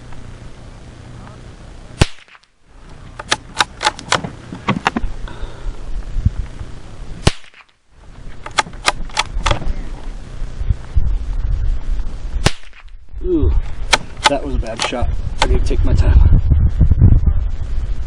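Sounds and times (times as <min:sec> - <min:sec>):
rifle shot: 0:02.0 - 0:02.5, 0:07.2 - 0:07.8, 0:08.5 - 0:09.6, 0:12.4 - 0:13.0, 0:13.9 - 0:15.6
metallic rifle bolt clicks: 0:08.4 - 0:09.6.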